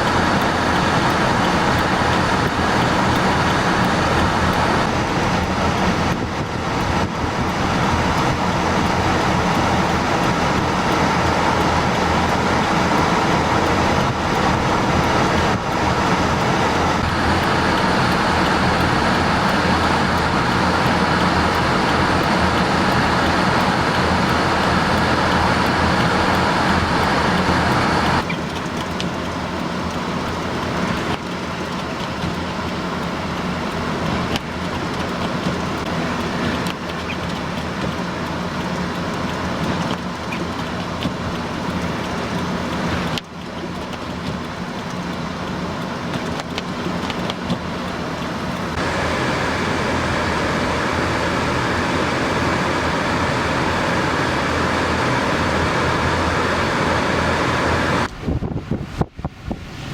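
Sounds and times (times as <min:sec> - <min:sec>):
strong blizzard wind: 0:00.0 - 0:28.3, 0:47.9 - 0:59.9
vehicle engine running: 0:00.0 - 0:59.9.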